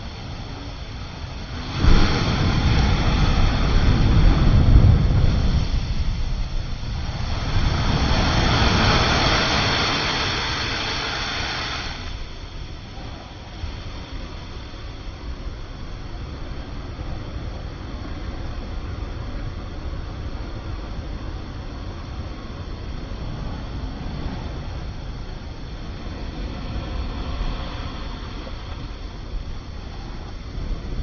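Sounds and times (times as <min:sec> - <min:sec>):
waves breaking on shore: 0:01.5 - 0:12.5.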